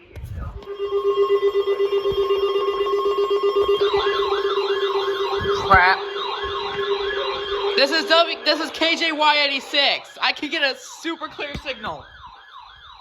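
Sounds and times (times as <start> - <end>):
electronic warble: 0.0 - 10.2
steady electronic buzzing tone: 0.0 - 10.2
rising electronic chirp: 0.7 - 10.2.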